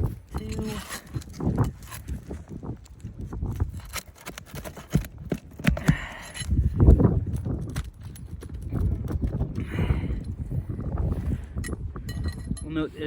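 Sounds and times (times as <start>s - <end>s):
hand tool scraping shingles: 0.0s - 6.6s
gritty crunching: 0.0s - 9.7s.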